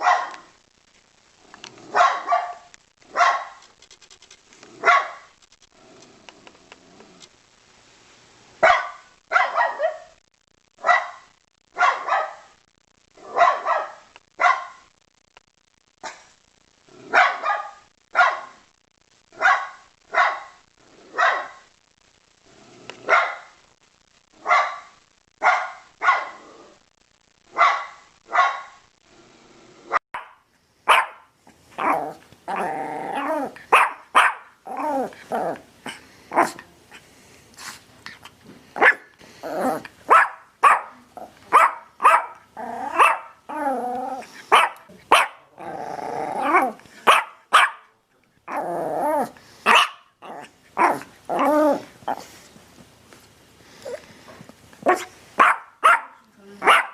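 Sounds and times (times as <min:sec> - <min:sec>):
dog barking quickly: 0:00.0 - 0:00.4, 0:01.9 - 0:03.6, 0:04.8 - 0:05.3, 0:08.6 - 0:10.2, 0:11.8 - 0:12.5, 0:13.2 - 0:14.8, 0:17.1 - 0:18.6, 0:19.4 - 0:20.6, 0:21.2 - 0:21.6, 0:23.0 - 0:23.5, 0:24.4 - 0:26.4, 0:27.5 - 0:28.8, 0:30.2 - 0:32.0, 0:33.7 - 0:34.5, 0:38.8 - 0:39.1, 0:40.1 - 0:43.4, 0:44.5 - 0:45.5, 0:47.0 - 0:47.9, 0:49.6 - 0:50.1, 0:54.9 - 0:56.9
dog barking: 0:00.0 - 0:00.6, 0:01.9 - 0:03.6, 0:04.8 - 0:05.3, 0:08.6 - 0:10.2, 0:10.8 - 0:12.6, 0:13.2 - 0:14.8, 0:17.1 - 0:18.6, 0:19.4 - 0:21.7, 0:23.0 - 0:23.6, 0:24.4 - 0:26.4, 0:27.5 - 0:28.8, 0:30.2 - 0:32.0, 0:33.7 - 0:34.6, 0:38.8 - 0:39.1, 0:40.1 - 0:43.4, 0:44.5 - 0:45.5, 0:46.6 - 0:47.9, 0:49.6 - 0:50.1, 0:54.9 - 0:56.9
dog growling: 0:05.7 - 0:07.3, 0:22.4 - 0:23.1, 0:26.3 - 0:26.8, 0:29.1 - 0:30.0, 0:31.4 - 0:47.5, 0:48.5 - 0:52.6.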